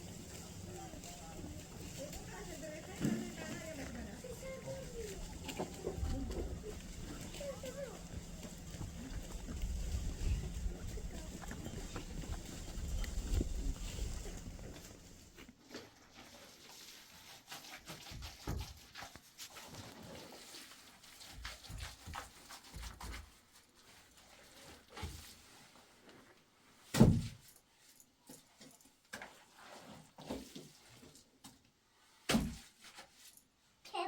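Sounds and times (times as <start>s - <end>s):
rustling: 0.0s - 26.8s.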